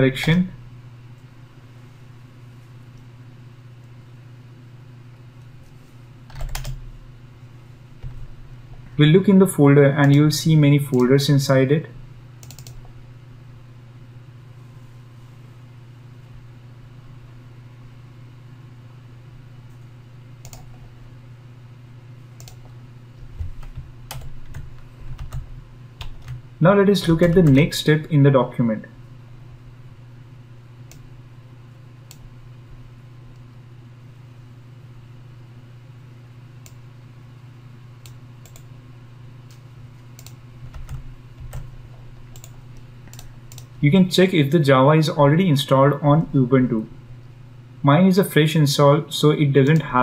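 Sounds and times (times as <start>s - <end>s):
low electrical hum: 0.0s - 50.0s
computer clicks: 6.3s - 6.8s, 12.4s - 12.8s, 20.4s - 20.8s, 22.4s - 22.8s, 38.0s - 38.7s, 39.4s - 41.7s, 42.3s - 43.7s.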